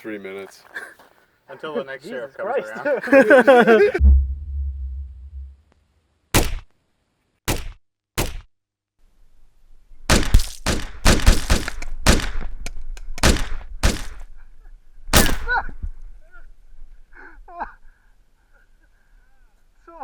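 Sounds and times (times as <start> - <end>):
sharp knocks and cracks: 6.4 - 6.7, 7.5 - 8.5, 10.1 - 14.2.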